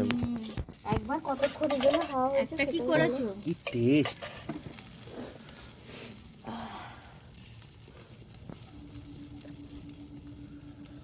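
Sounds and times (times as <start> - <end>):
food sizzling over a fire: 0.0 - 11.0
steady low hum: 6.4 - 11.0.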